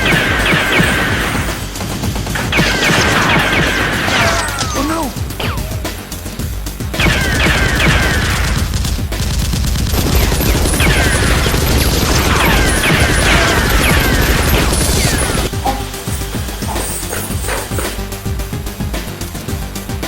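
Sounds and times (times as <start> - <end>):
rapid automatic gunfire: 0.0 - 5.6, 6.9 - 15.5.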